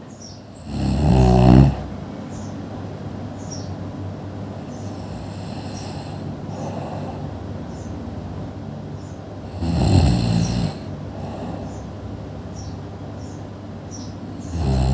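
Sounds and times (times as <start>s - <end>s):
person snoring: 0.5s - 2.0s, 4.6s - 7.4s, 9.4s - 11.8s, 14.3s - 14.9s
steady breathing: 4.4s - 7.9s, 9.4s - 12.2s.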